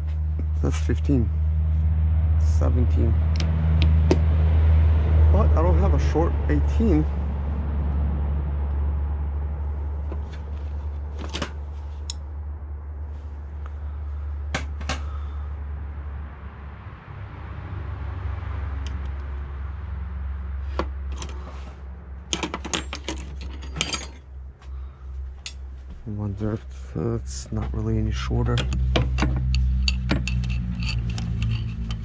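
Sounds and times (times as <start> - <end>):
steady low hum: 0.0 - 32.0
metal wrenches clinking: 22.3 - 24.3, 28.5 - 32.0.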